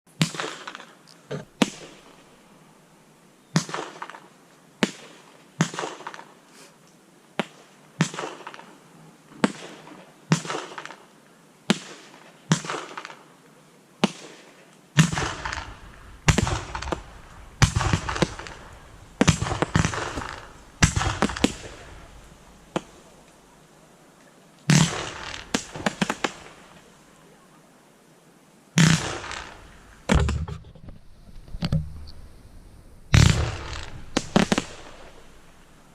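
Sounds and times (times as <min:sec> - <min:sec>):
fireworks bangs: 0:00.2 - 0:02.4, 0:15.0 - 0:23.7, 0:24.7 - 0:27.0, 0:28.8 - 0:35.9.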